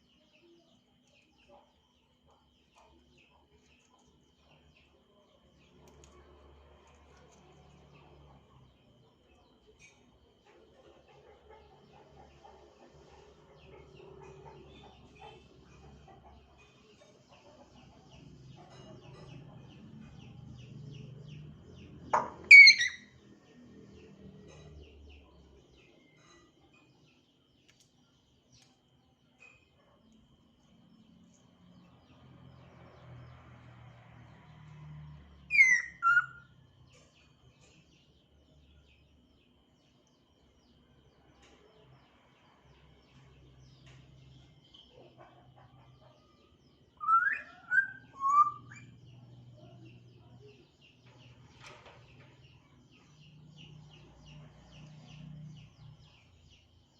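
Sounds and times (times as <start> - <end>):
faint bird chirps: 22.1 - 23.2, 35.5 - 38.4
parrot squawking: 22.2 - 23.1, 35.5 - 36.4.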